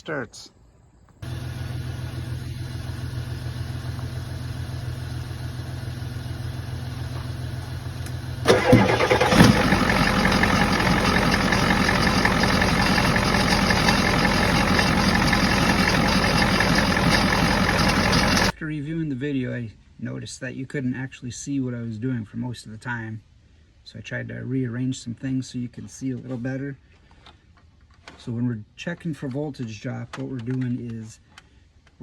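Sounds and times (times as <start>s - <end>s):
diesel engine cranking: 1.2s - 18.5s
diesel engine running: 1.2s - 18.5s
engine knock on starting: 8.5s - 18.5s.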